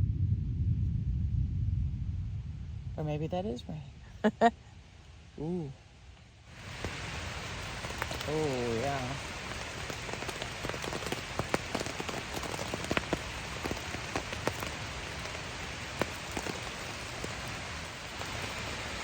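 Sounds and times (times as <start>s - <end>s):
steady rain: 2.6s - 19.0s
raindrops tapping: 6.5s - 19.0s.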